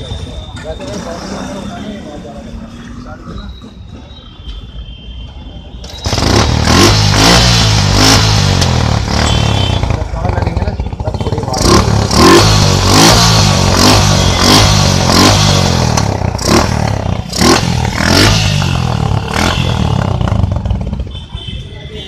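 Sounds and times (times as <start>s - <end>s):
motorcycle engine revving: 0.0s - 2.2s, 5.8s - 21.3s.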